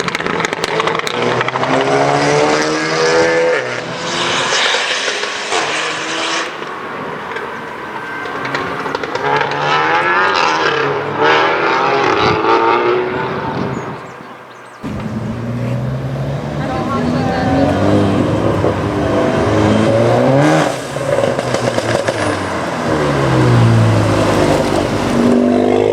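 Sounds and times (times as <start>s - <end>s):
car engine accelerating hard: 0.0s - 25.9s
low steady engine note: 14.8s - 19.9s.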